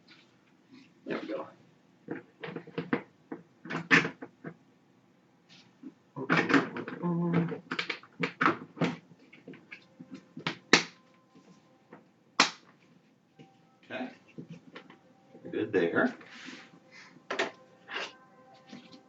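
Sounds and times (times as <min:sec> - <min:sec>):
plastic parts clicking and knocking: 0:02.1 - 0:04.6, 0:06.2 - 0:09.8, 0:17.3 - 0:17.6.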